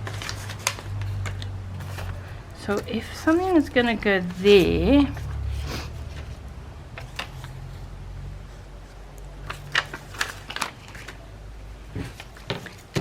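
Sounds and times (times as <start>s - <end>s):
paper rustling and tapping: 0.0s - 5.3s, 9.4s - 11.2s, 11.8s - 13.0s
steady low hum: 0.0s - 9.8s.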